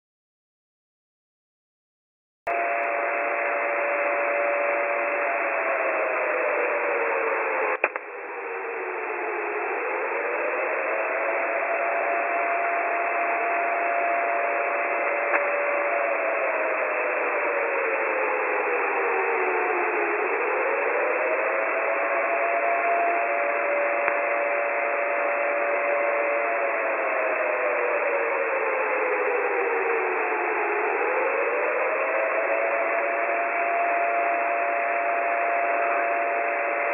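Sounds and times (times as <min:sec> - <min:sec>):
radio static: 0:02.5 - 0:18.5
siren-like radio wail: 0:02.5 - 0:36.9
sharp click: 0:07.8 - 0:08.1.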